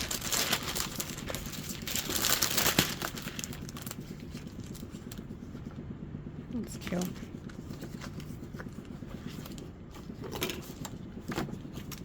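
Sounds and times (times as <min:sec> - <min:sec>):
paper sheets crinkling and rustling: 0:00.0 - 0:05.7, 0:06.8 - 0:12.0.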